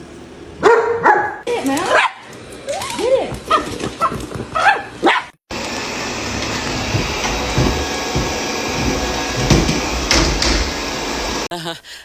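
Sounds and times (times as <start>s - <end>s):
dog barking: 0.6s - 2.2s, 3.5s - 5.3s
robot vacuum whirring: 5.5s - 11.5s.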